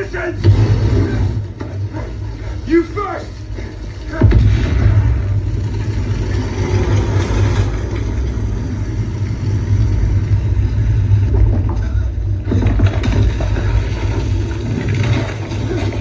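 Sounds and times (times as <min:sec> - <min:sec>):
noisy wash: 0:00.0 - 0:16.0
deep bass rumble: 0:03.4 - 0:16.0
sharp hit: 0:04.1 - 0:07.8.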